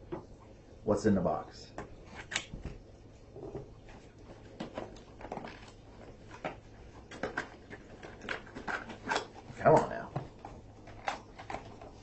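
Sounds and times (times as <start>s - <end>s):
light clicks and rustles of packaging: 3.9s - 12.0s.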